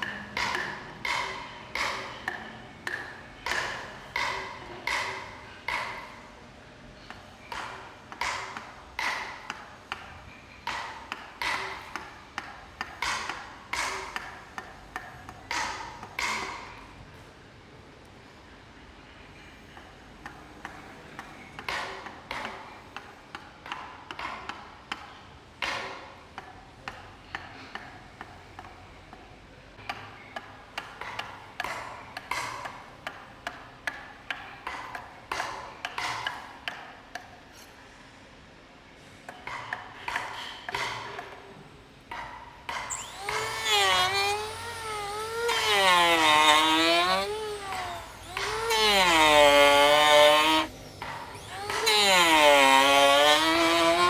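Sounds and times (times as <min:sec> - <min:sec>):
power tool motor: 0:42.8 - 0:54.0.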